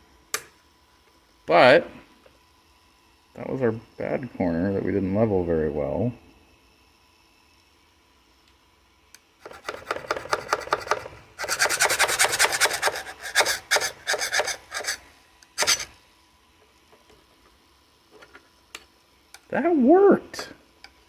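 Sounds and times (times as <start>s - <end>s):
blade scraping plastic: 9.4s - 15.0s, 15.6s - 15.9s.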